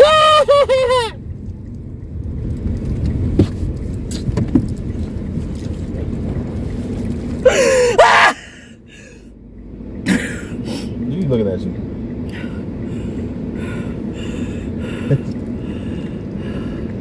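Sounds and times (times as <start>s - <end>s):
person crying out: 0.0s - 1.2s, 7.5s - 8.7s
car cabin rumble: 0.0s - 17.0s.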